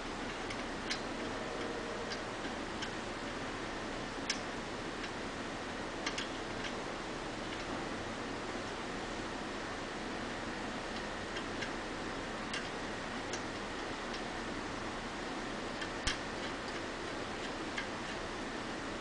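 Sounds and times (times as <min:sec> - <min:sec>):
metallic clicks and ticks: 0:06.0 - 0:06.8.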